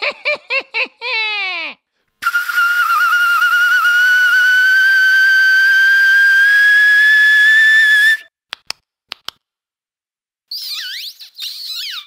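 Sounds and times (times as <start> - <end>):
mouth whistle rising in pitch: 2.2 - 8.3.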